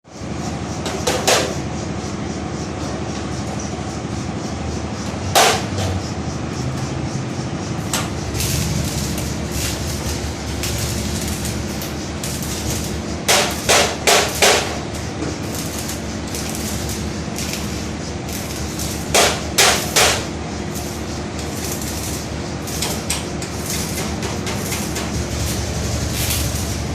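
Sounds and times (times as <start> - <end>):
mechanical running noise: 1.6 - 26.9
hammer striking metal: 5.3 - 6.0, 13.3 - 14.9, 19.1 - 20.3.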